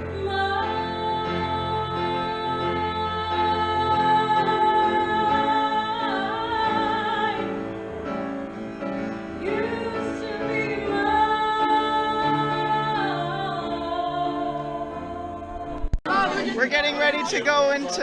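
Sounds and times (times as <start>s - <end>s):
woman singing with vibrato: 0.0s - 7.7s, 9.4s - 16.6s
sustained musical accompaniment: 0.0s - 18.0s.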